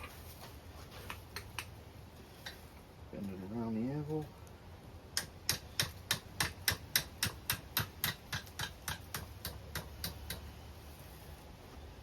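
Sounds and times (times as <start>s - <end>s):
hammer striking hot steel on anvil: 5.2s - 10.5s.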